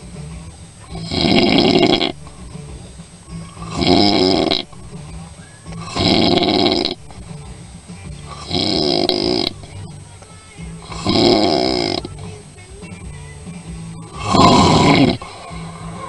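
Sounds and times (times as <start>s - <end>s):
person snoring loudly: 0.8s - 2.3s, 3.5s - 4.8s, 5.8s - 7.2s, 8.3s - 9.7s, 10.8s - 12.2s, 13.9s - 16.0s.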